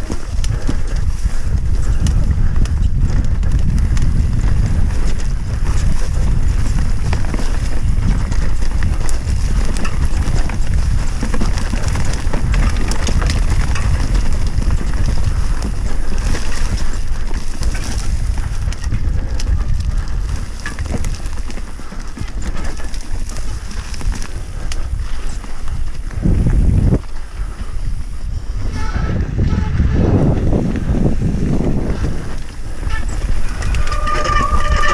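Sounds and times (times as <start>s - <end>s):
bike rattling over rough ground: 0.0s - 34.9s
wind buffeting microphone: 0.0s - 34.9s.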